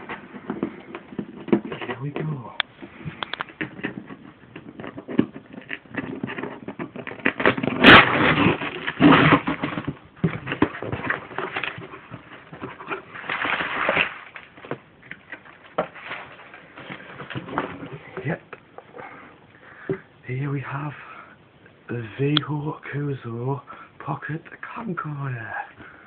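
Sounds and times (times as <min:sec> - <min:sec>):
packaging being torn open: 0:06.6 - 0:09.9.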